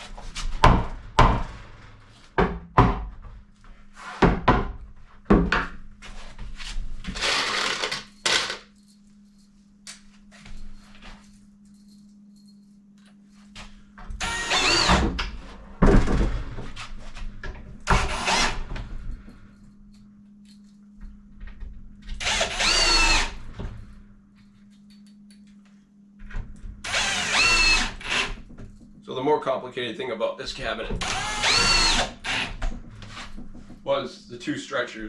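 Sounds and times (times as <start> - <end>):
faint low hum: 4.7 - 35.0
power drill motor whine: 7.1 - 8.6, 14.2 - 15.3, 17.9 - 18.8, 22.1 - 23.4, 26.8 - 28.5, 31.0 - 32.7.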